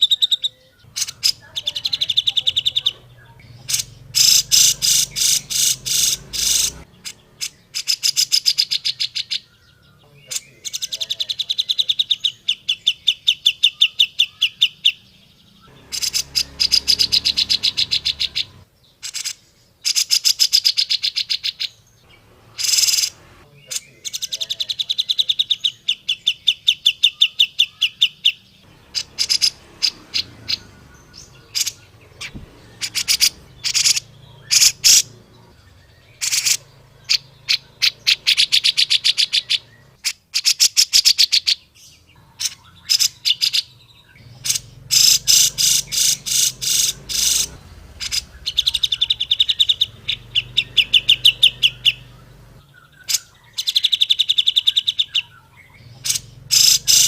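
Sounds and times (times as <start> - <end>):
bulbul rattling chatter: 0.9 - 7.6, 44.4 - 52.5.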